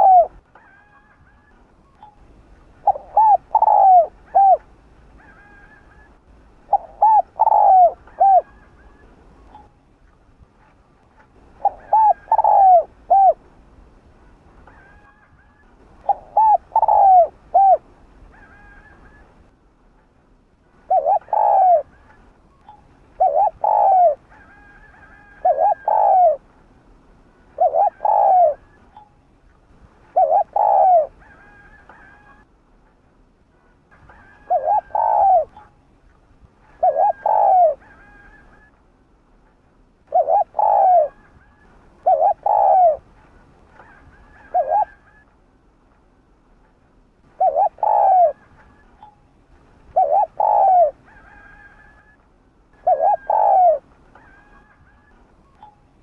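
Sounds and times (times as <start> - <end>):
dove cooing: 0.0 - 2.1, 2.8 - 9.7, 11.6 - 13.5, 14.7 - 19.4, 20.8 - 26.5, 27.5 - 29.1, 30.1 - 32.5, 34.0 - 35.8, 36.6 - 38.8, 40.1 - 43.1, 43.7 - 45.3, 47.3 - 49.2, 49.9 - 52.2, 52.8 - 56.0.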